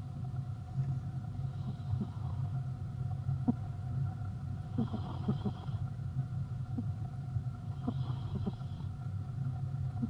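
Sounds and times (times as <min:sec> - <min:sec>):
steady low rumble: 0:00.0 - 0:10.0
pet snoring: 0:01.4 - 0:02.6, 0:04.7 - 0:05.8, 0:07.8 - 0:08.9.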